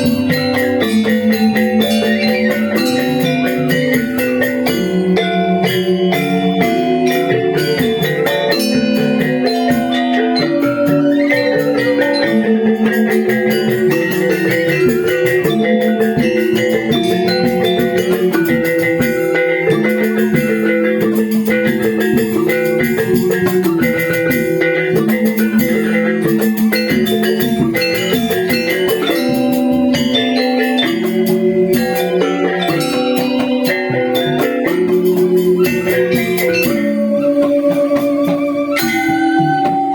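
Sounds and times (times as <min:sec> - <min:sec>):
gamelan ensemble playing: 0:00.0 - 0:39.9.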